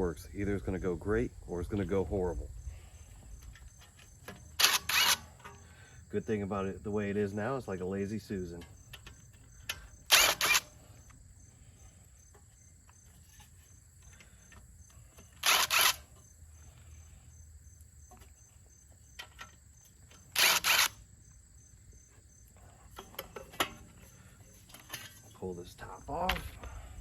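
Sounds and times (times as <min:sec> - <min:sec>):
sharp mechanical bursts: 0:04.6 - 0:05.4, 0:10.0 - 0:10.9, 0:15.4 - 0:16.1, 0:20.3 - 0:21.0.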